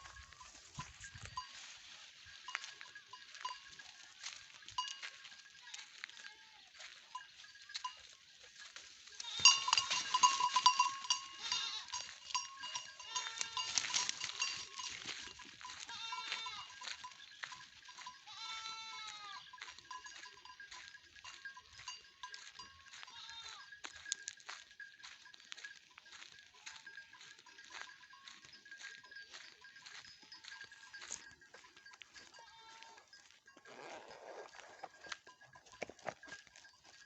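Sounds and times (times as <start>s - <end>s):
goats bleating: 5.4s - 7.0s, 9.1s - 14.9s, 15.6s - 20.2s, 22.9s - 23.8s, 32.2s - 33.2s
undergrowth rustling and crackling: 8.6s - 17.6s.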